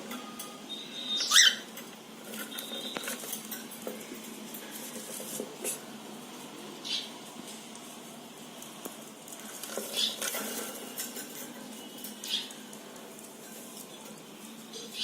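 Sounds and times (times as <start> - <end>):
cockatiel chirp: 1.0 - 1.7
birds scratching: 1.2 - 15.0.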